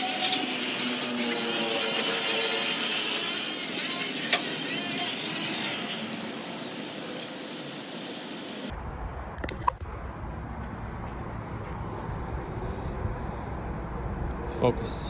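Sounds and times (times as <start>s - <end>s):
power tool grinding steel: 0.0s - 7.5s.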